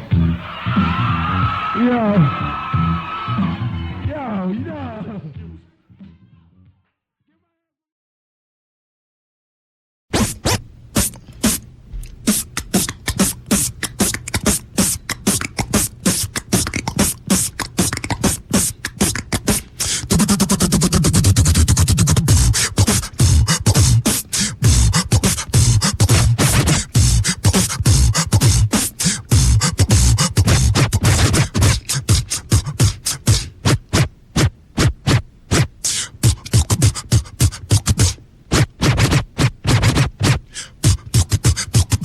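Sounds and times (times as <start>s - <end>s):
person beatboxing: 10.1s - 42.0s.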